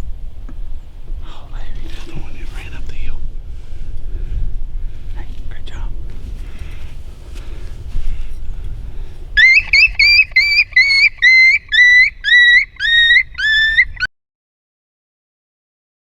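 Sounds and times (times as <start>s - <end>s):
wind rumble on microphone: 0.0s - 14.1s
coyote distress yelps: 9.4s - 14.1s.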